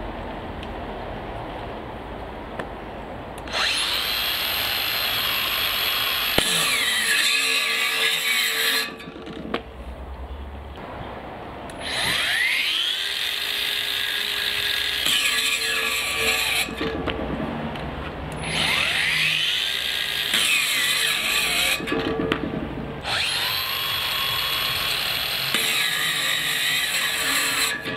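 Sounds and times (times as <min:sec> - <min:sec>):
angle grinder whining: 0:03.5 - 0:09.4, 0:11.8 - 0:17.0, 0:18.4 - 0:22.2, 0:23.0 - 0:27.9
grinding noise: 0:11.8 - 0:27.9.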